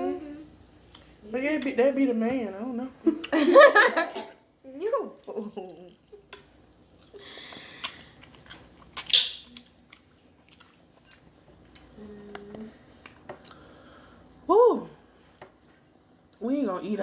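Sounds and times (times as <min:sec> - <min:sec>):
steady hum: 0:00.0 - 0:17.0
person chewing food: 0:05.8 - 0:13.8.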